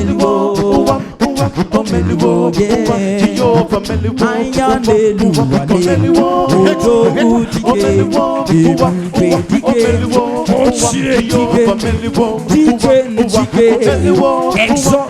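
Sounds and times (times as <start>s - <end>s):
a cappella group singing gospel: 0.0s - 15.0s
quick clicking beat: 0.0s - 15.0s
sung bass line: 5.4s - 12.3s.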